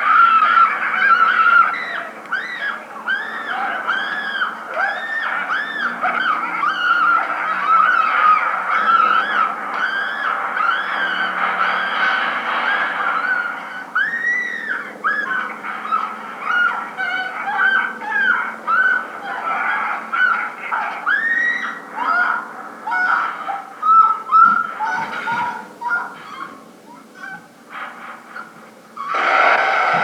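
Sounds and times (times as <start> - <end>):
geese honking: 0.0 - 30.0.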